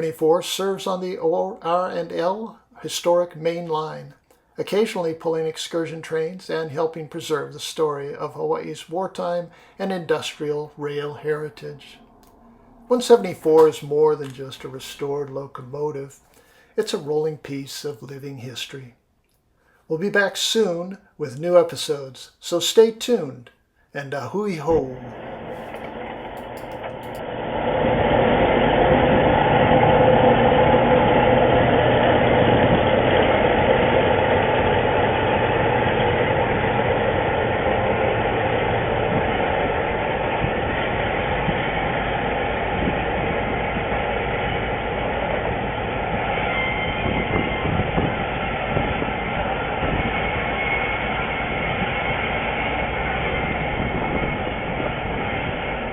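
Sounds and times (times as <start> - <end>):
diesel locomotive engine: 9.5 - 15.3, 24.7 - 55.9.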